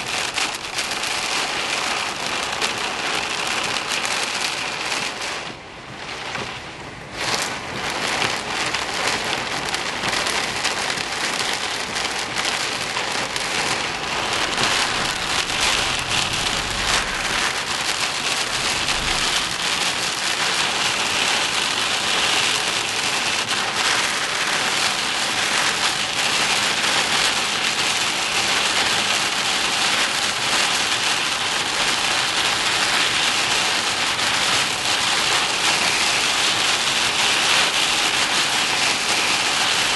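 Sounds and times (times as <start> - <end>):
heavy rain falling: 0.0 - 39.9
low rumble: 13.4 - 21.3.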